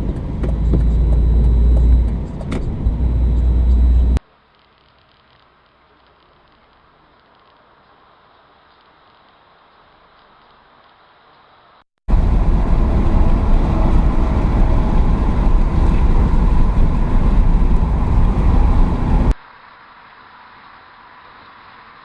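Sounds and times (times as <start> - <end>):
car engine running: 0.0 - 4.2, 12.1 - 19.3.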